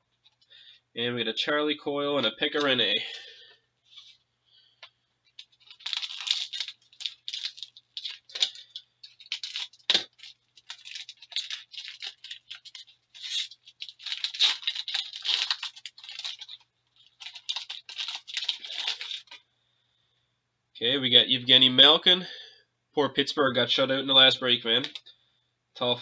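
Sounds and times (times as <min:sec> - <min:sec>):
foil wrapper tearing and crinkling: 0:05.3 - 0:19.4.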